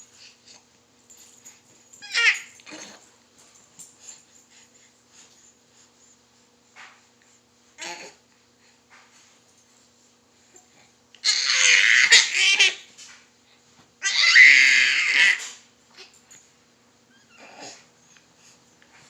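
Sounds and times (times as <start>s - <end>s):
baby squealing laughter: 11.2s - 12.8s.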